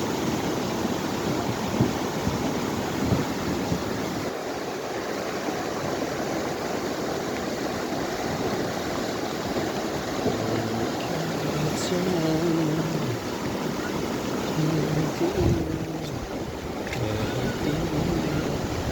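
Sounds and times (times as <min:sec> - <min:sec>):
river rushing: 0:00.0 - 0:18.9.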